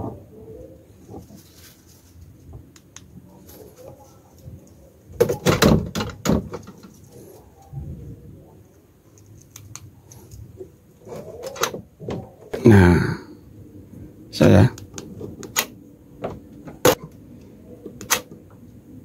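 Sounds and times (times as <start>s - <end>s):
door knocks and rattles: 5.2s - 6.8s.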